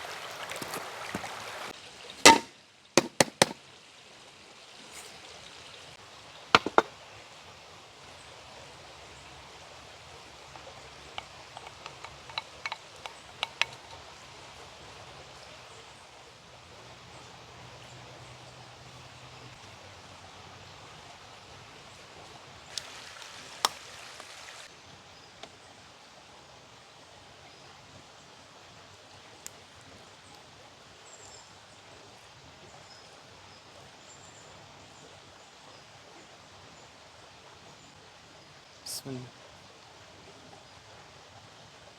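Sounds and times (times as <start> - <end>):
soft steady hiss: 0.0 - 41.9
light clicks and ticks: 10.6 - 14.0.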